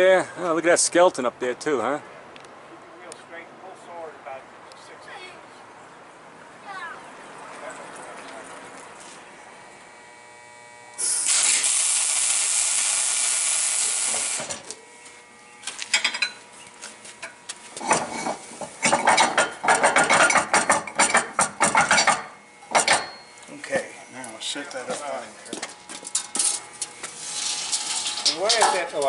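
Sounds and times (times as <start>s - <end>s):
loud steady hiss: 11.0s - 14.7s
rattling clattering knocks: 17.9s - 23.2s.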